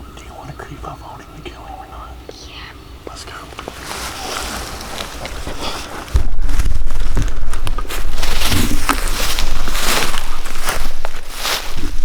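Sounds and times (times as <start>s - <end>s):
rustling and crunching leaves: 3.4s - 12.0s
handling bumps: 3.6s - 12.0s.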